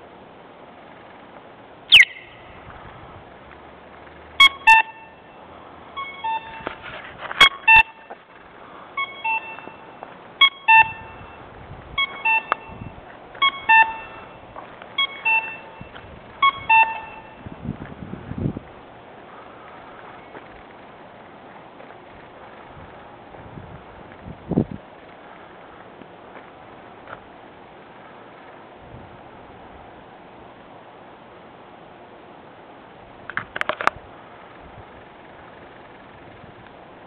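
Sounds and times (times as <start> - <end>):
sharp falling chirp: 1.9 - 2.4
shrill double beeps: 1.9 - 2.4, 4.4 - 5.2, 6.0 - 6.7, 7.4 - 8.1, 9.0 - 14.4, 15.0 - 17.4.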